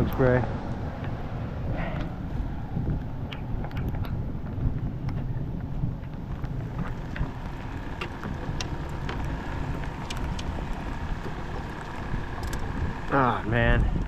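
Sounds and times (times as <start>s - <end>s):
wind buffeting microphone: 0.0s - 14.0s
raindrops ticking: 6.6s - 13.2s.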